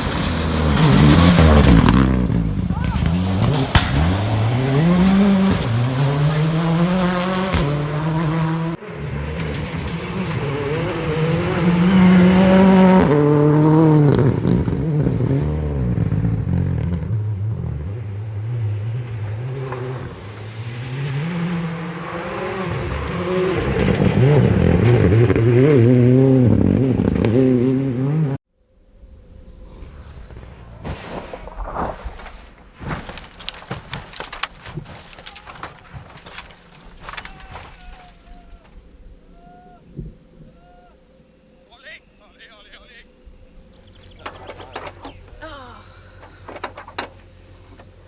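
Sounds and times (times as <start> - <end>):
rally car engine revving: 0.0 - 28.4.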